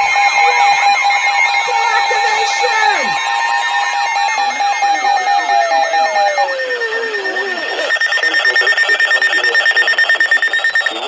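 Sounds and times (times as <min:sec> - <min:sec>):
fast repeating sweep alarm: 0:00.0 - 0:11.0
high rapidly pulsing alarm: 0:00.0 - 0:11.0
siren tone gliding down: 0:04.2 - 0:08.0
pulsing electronic beep: 0:04.2 - 0:11.0.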